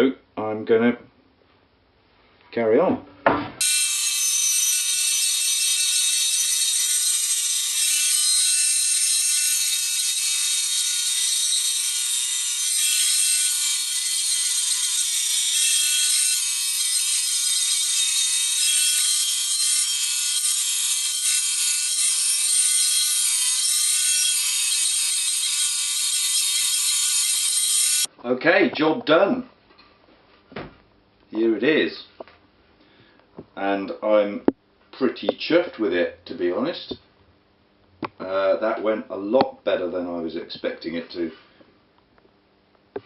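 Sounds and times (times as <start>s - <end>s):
bandsaw whining through wood: 3.6s - 28.1s.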